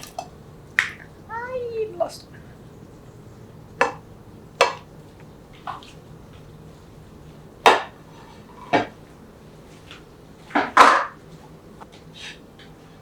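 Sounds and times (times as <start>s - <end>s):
cutlery knocking against dishes: 3.8s - 4.0s.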